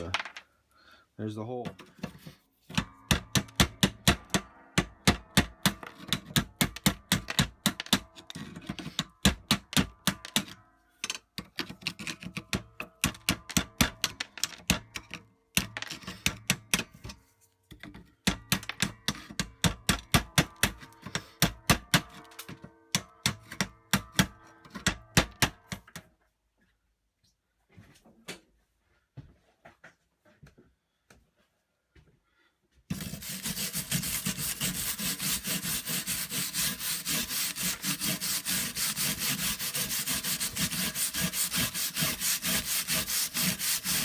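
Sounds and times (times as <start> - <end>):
chisel chipping metal: 2.7 - 10.6, 11.4 - 16.9, 18.2 - 25.6, 32.9 - 44.0.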